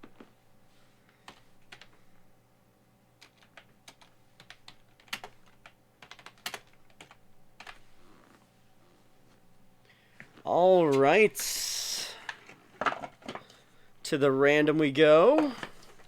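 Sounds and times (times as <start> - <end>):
keyboard typing: 1.2 - 2.0, 3.2 - 7.9.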